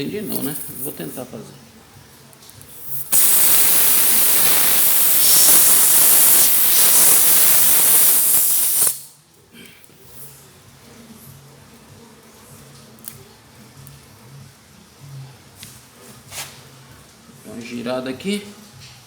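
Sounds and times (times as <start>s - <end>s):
air hissing from tyre: 2.7s - 9.2s.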